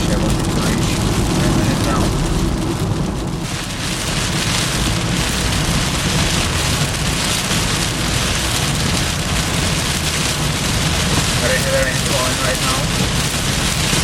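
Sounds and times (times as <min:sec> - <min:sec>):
car road noise: 0:00.0 - 0:14.0
heavy rain hitting a car: 0:00.0 - 0:14.0.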